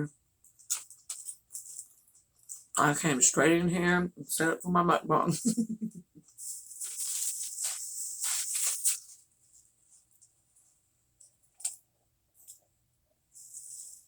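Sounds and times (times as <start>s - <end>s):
crunching fried chicken: 0.4s - 2.8s.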